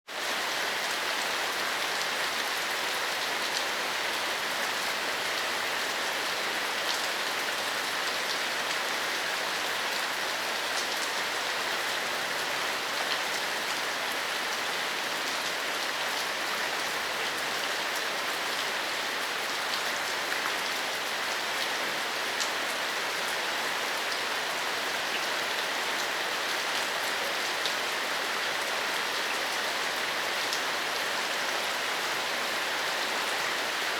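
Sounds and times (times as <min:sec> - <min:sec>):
rain falling on pavement: 0:00.1 - 0:33.9.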